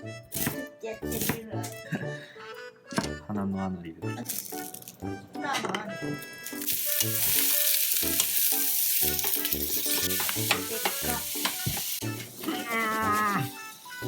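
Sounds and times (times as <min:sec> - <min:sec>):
food sizzling in a pan: 0:06.4 - 0:14.0.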